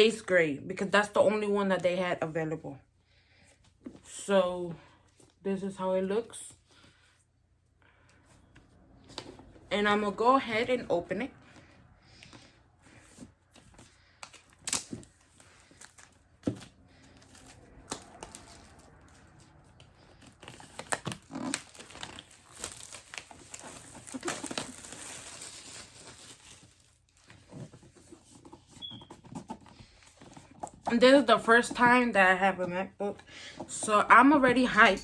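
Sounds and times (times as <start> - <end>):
wrapping being torn and crumpled: 14.2 - 16.3, 17.0 - 27.3.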